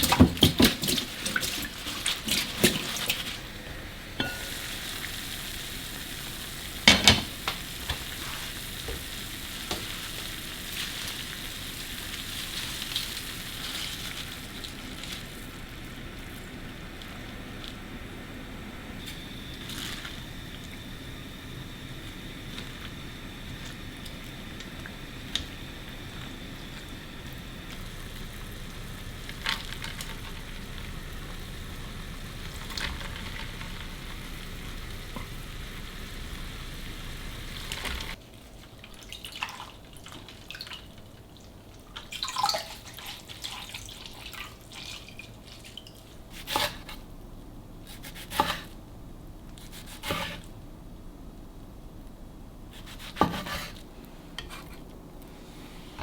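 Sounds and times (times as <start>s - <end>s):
kitchen tap running: 0.0s - 38.2s, 38.8s - 46.7s
kitchenware knocks and clinks: 4.2s - 4.6s, 6.9s - 7.4s.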